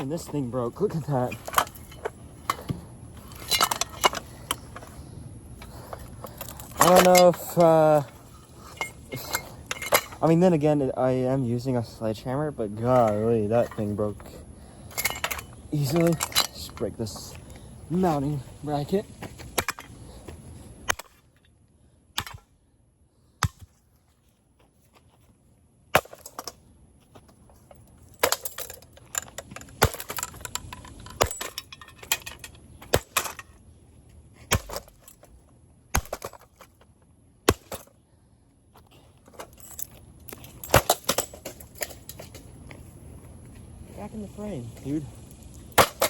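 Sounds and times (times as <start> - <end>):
loose metal parts rattling: 0.0 - 21.2, 27.2 - 33.6, 34.4 - 36.8, 38.8 - 42.9.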